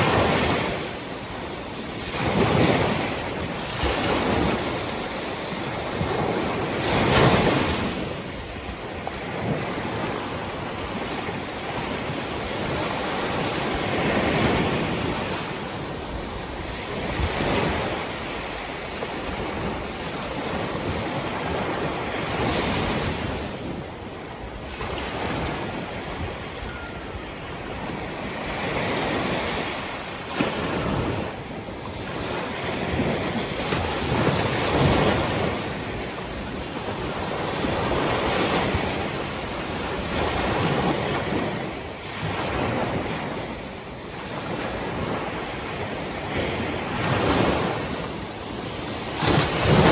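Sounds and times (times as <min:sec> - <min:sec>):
waves breaking on beach: 0:00.0 - 0:49.9.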